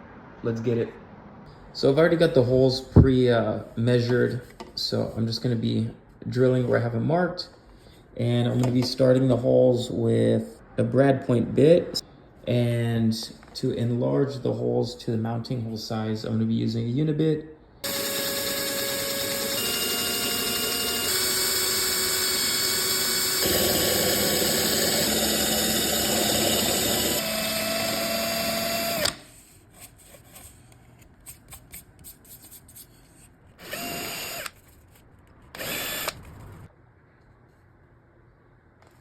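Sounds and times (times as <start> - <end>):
power drill boring into wood: 17.8 - 29.2, 33.6 - 34.6, 35.6 - 36.3.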